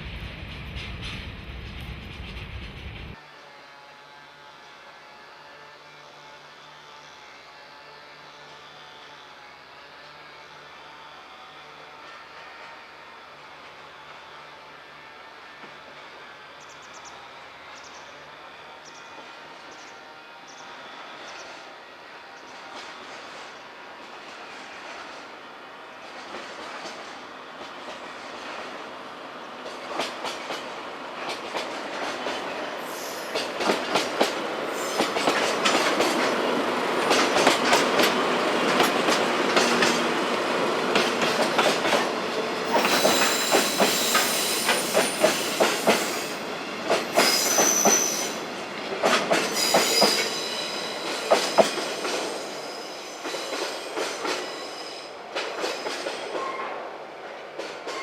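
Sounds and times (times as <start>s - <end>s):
train wheels clicking over rail joints: 29.5s - 52.5s, 53.2s - 56.4s
high-pitched wheel squeal: 42.6s - 46.4s, 47.2s - 48.4s, 49.5s - 51.3s.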